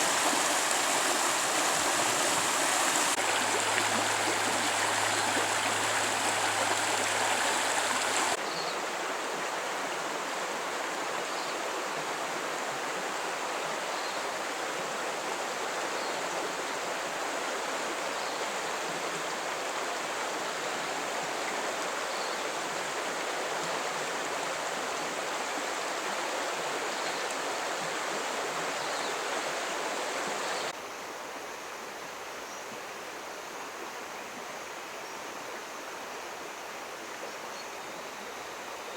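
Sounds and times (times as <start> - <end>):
river water rushing: 0.0 - 11.2.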